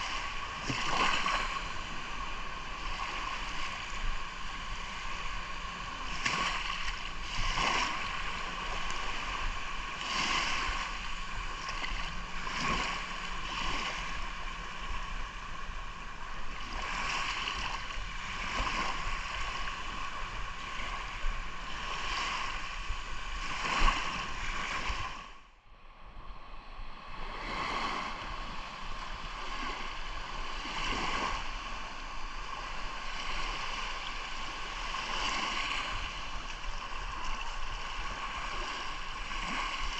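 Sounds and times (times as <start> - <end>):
small waves washing in: 0.0 - 39.9.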